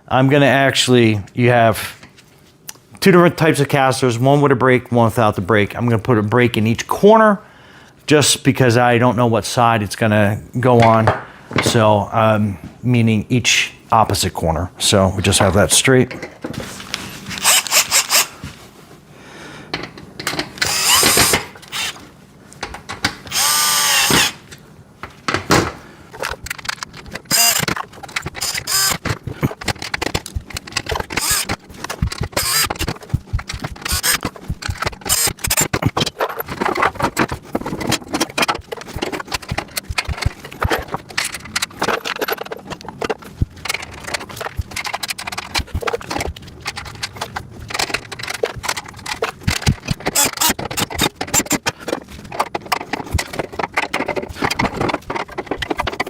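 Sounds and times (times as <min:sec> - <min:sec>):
power drill driving bolts: 0:17.4 - 0:18.3, 0:20.5 - 0:22.0, 0:23.3 - 0:24.5, 0:26.6 - 0:35.8, 0:49.6 - 0:51.6
metallic clicks of bolts and parts: 0:26.2 - 0:56.0.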